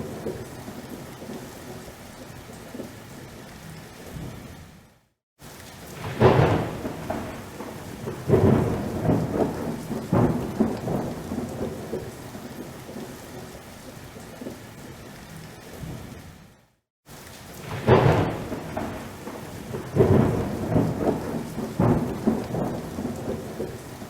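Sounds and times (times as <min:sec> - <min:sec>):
rolling thunder: 0:00.0 - 0:01.9, 0:05.9 - 0:13.2, 0:17.6 - 0:24.0
steady rain: 0:00.0 - 0:24.0.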